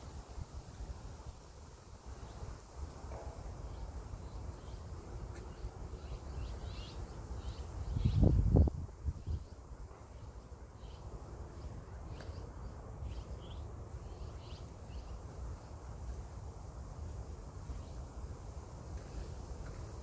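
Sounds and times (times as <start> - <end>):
small birds chirping: 3.7 - 18.5.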